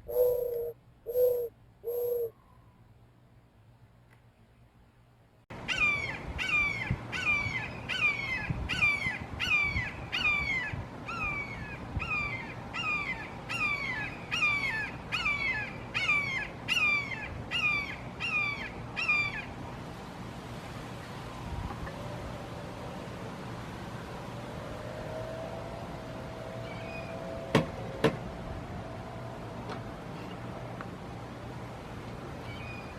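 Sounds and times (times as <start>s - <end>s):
hawk calling: 0.0s - 2.3s.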